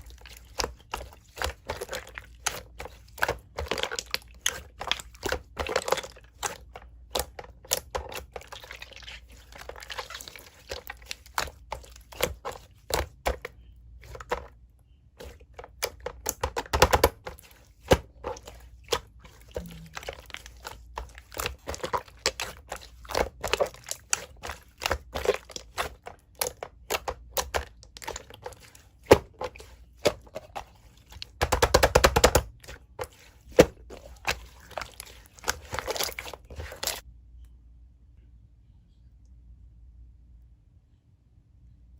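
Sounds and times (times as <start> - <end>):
slime squishing: 0.0 - 37.1.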